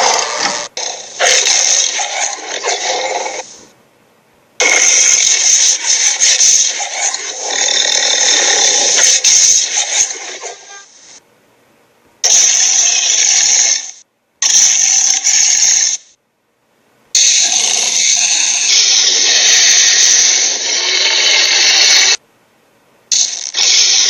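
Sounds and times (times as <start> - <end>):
harsh noisy sound effect bursts: 0.0 - 3.5, 4.6 - 10.6, 12.2 - 16.0, 17.2 - 22.2, 23.1 - 24.0.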